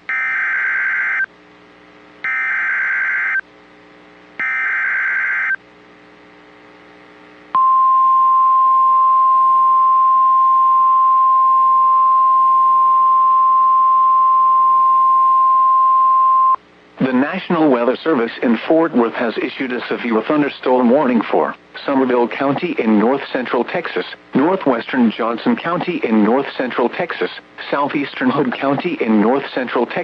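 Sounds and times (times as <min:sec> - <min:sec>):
steady alarm tone: 0:00.1 - 0:01.3, 0:02.2 - 0:03.4, 0:04.4 - 0:05.6.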